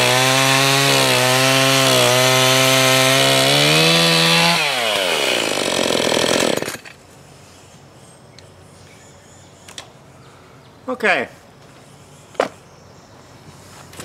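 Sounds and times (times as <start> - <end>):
chainsaw revving at full throttle: 0.0 - 6.8.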